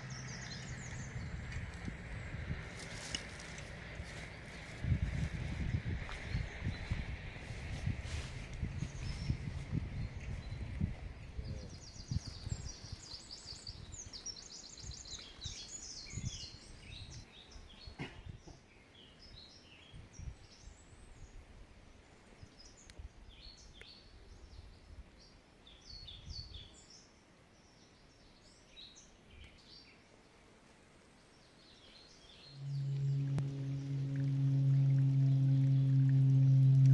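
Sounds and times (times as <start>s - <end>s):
songbirds chirping and trilling: 0.0s - 36.9s
low thumps and rumble: 32.6s - 36.9s.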